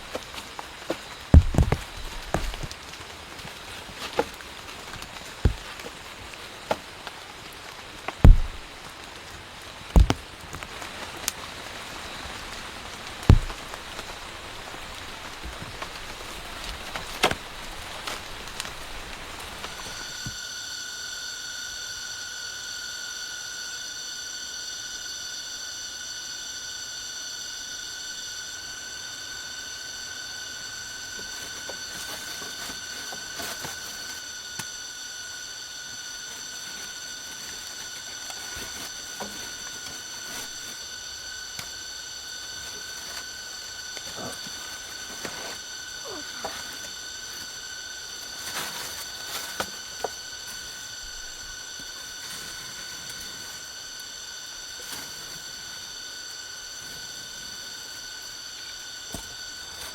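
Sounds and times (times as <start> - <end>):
steady hiss: 0.0 - 59.9
heavy knocks: 1.4 - 2.7, 8.2 - 8.6.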